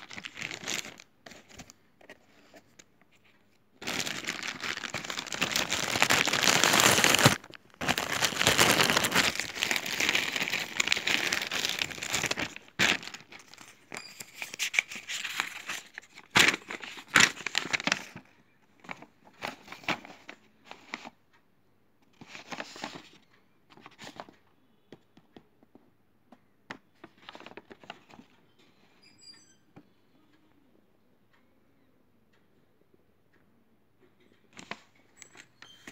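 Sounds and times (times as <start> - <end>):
plastic packaging crinkling: 0.0 - 1.8, 3.8 - 18.3.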